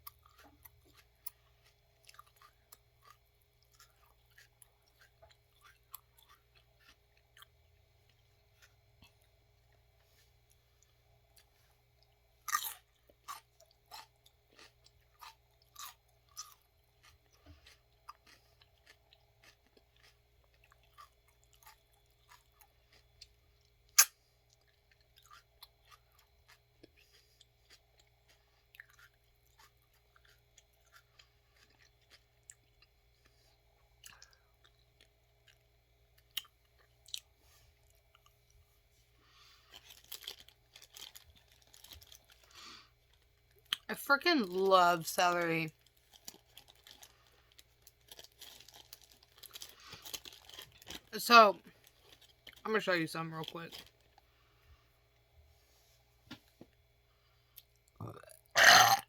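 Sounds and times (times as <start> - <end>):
crunchy celery chewing: 0.0 - 33.4, 39.4 - 43.9, 45.7 - 52.6, 57.6 - 59.0.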